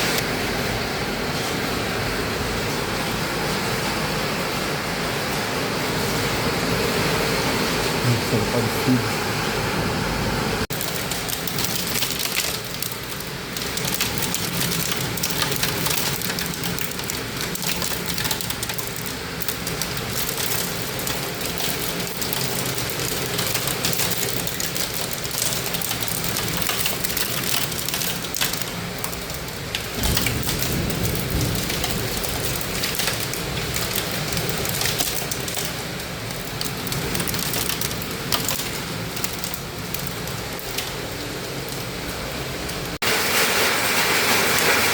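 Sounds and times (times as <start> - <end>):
heavy rain and hail: 0.0 - 44.9.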